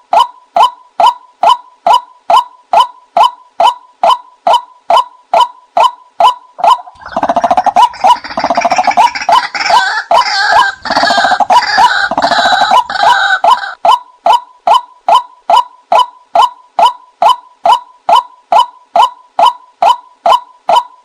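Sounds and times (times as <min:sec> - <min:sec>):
harsh croaking bird calls: 0:06.2 - 0:13.9.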